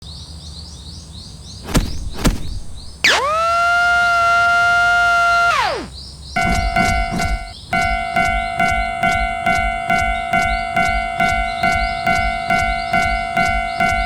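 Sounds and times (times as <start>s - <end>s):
chirping: 1.6s - 14.0s
thumps: 1.6s - 14.0s
loud sliding tone with overtones: 1.7s - 14.0s
railroad crossing bell ringing: 6.4s - 14.0s.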